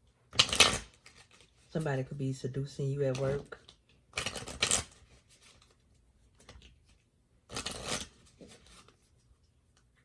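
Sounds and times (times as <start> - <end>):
card rustles: 0.4 - 1.9, 3.1 - 9.9
cards riffling: 7.5 - 9.0.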